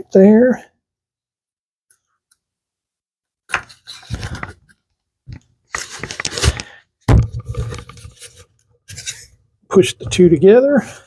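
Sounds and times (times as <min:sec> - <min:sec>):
wooden pieces scraping together: 0:05.7 - 0:09.3.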